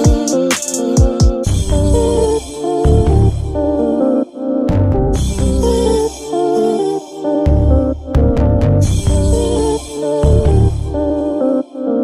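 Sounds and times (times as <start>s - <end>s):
music with heavy bass beat: 0.0s - 2.2s.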